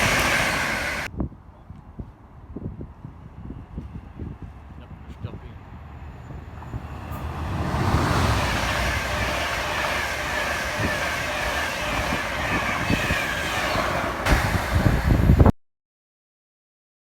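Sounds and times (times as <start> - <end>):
diesel locomotive passing: 0.0 - 1.1, 2.2 - 15.5
low buffeting: 2.2 - 15.5.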